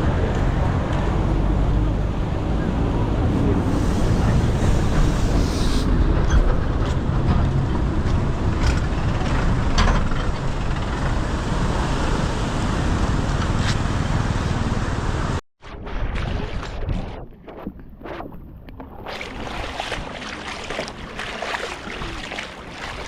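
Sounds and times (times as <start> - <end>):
floodwater rushing: 19.0 - 23.0.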